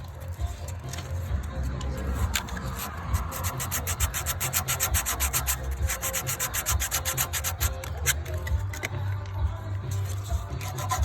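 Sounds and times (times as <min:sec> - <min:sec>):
sandpaper scraping in metal hole: 0:02.0 - 0:08.9, 0:09.9 - 0:11.0.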